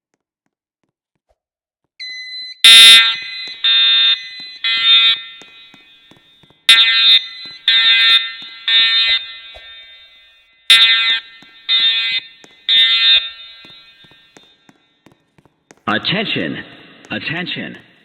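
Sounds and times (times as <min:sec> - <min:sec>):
fire alarm horn blasts: 0:02.0 - 0:14.7.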